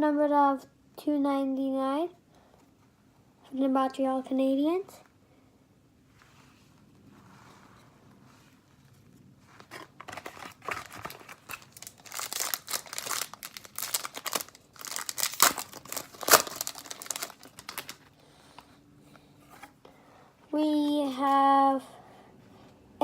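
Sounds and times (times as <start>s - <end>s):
wrapper crinkling: 9.6s - 18.1s.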